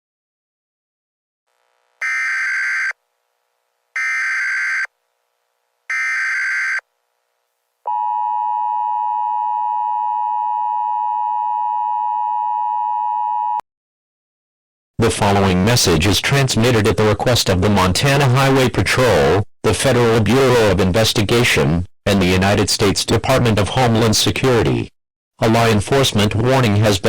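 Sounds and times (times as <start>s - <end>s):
two-tone attention signal: 2.0s - 3.0s.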